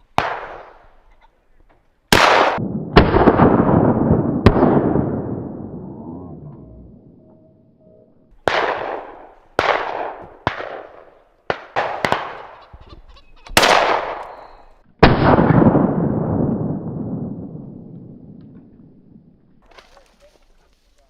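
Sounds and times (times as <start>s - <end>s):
shotgun shots echoing: 0.1s - 1.0s, 2.1s - 5.8s, 8.3s - 12.6s, 13.5s - 18.4s.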